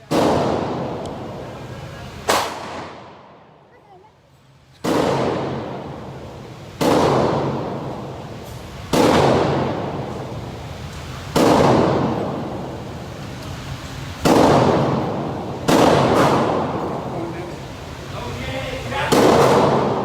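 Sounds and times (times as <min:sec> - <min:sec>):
gunshots with long echo: 0:00.0 - 0:03.6, 0:04.8 - 0:13.1, 0:14.2 - 0:17.2, 0:19.1 - 0:20.0.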